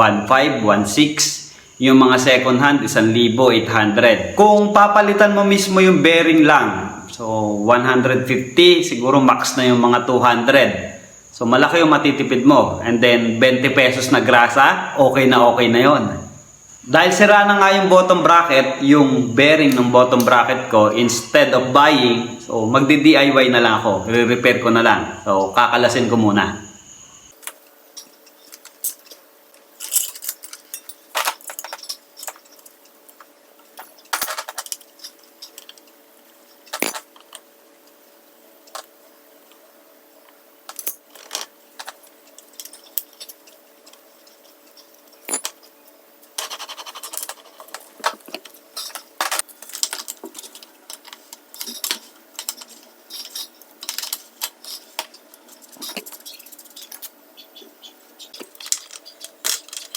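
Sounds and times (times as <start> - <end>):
metal parts clicking and rattling: 27.4 - 37.5, 40.7 - 57.2, 58.3 - 59.9.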